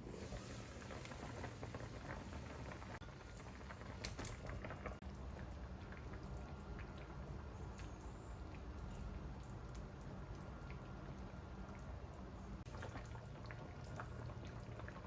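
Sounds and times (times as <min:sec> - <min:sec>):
food crackling in a pan: 0:00.2 - 0:06.4.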